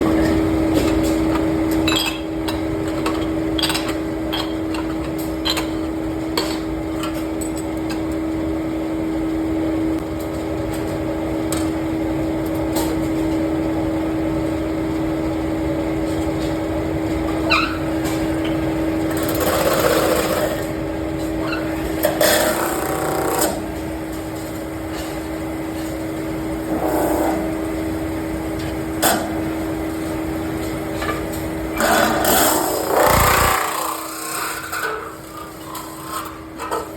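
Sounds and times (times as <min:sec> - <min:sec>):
scraping bursts: 0:32.7 - 0:34.6
metal lathe humming: 0:32.9 - 0:34.3.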